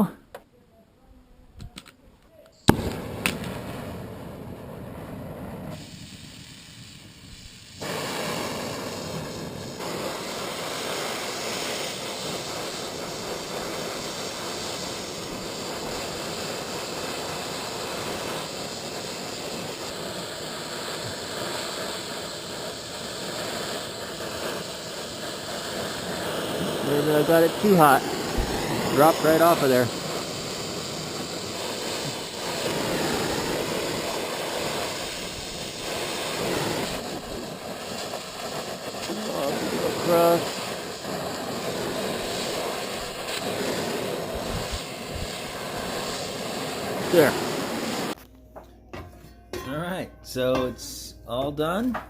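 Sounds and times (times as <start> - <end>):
sharp pop: 2.7 - 3.8
torch flame hissing: 2.7 - 48.2.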